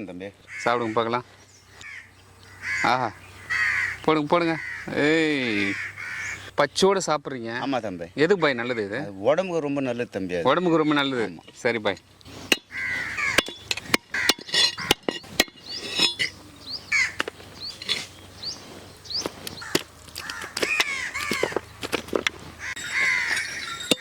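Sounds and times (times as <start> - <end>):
crows cawing: 0.5 - 6.5, 12.6 - 15.1, 16.9 - 17.3, 19.5 - 21.7, 22.6 - 24.0
bird chirps: 14.4 - 21.9, 22.6 - 24.0.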